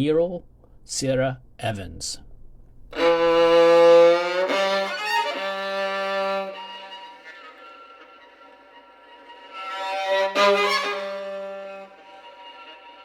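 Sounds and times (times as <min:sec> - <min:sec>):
bowed strings held notes: 0:02.9 - 0:13.0.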